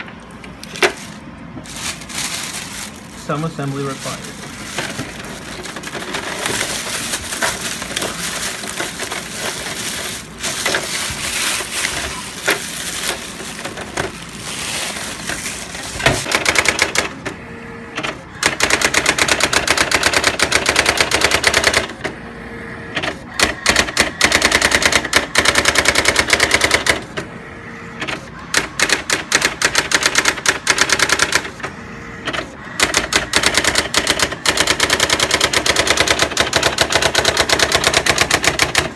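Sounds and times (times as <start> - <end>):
handling noise: 0.3 - 16.3
typewriter daisy wheel clacking: 28.6 - 31.5, 32.8 - 38.9.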